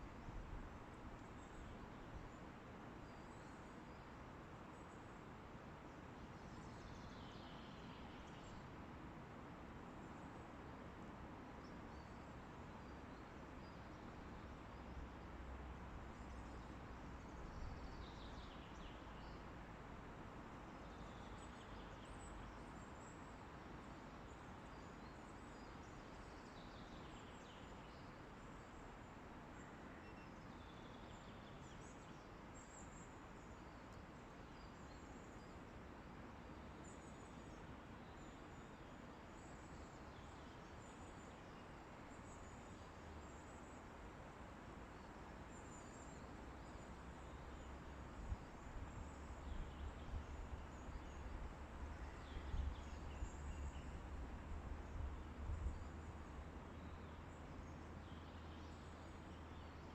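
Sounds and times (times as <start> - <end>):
wind through trees: 0.0 - 59.9
low rumble of wind gust: 48.0 - 58.3.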